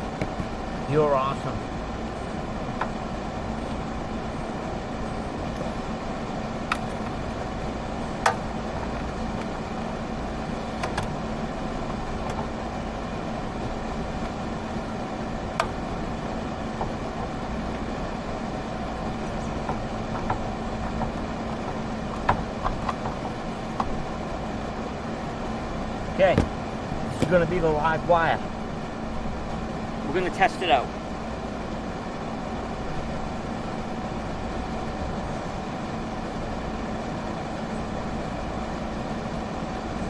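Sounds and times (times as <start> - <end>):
handling clicks and taps: 0.0 - 0.6, 6.6 - 9.6, 10.3 - 11.2, 11.8 - 12.8, 13.6 - 17.9, 18.7 - 24.0, 26.2 - 27.5
air conditioner hum: 0.0 - 40.0.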